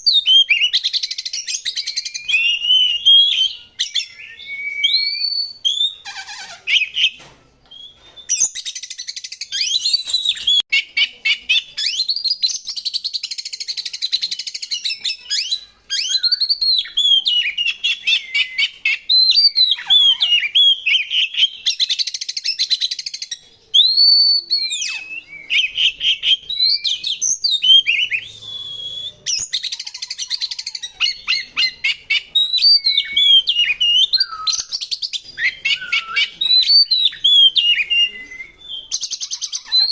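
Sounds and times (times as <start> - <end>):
bird singing varied song: 0.0 - 39.9.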